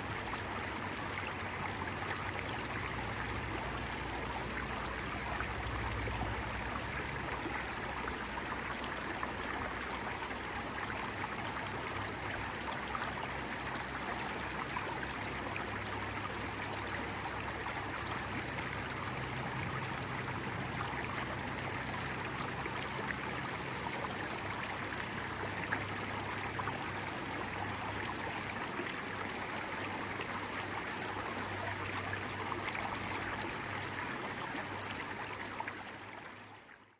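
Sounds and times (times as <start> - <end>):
stream water rushing: 0.0 - 36.7.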